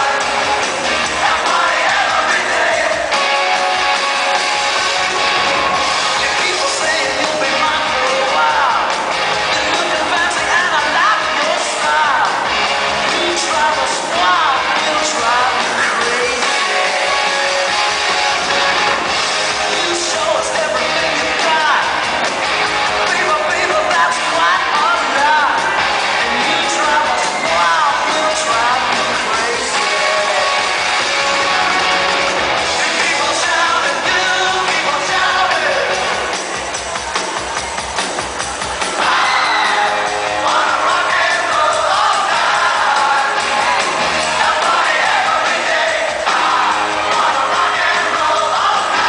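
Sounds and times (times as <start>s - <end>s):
rock song with guitar and drums: 0.0s - 49.0s.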